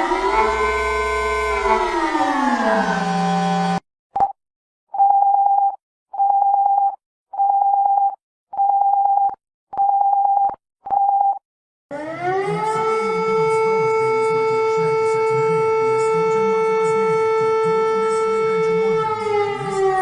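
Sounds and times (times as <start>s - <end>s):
emergency siren winding: 0.0s - 3.8s, 11.9s - 20.0s.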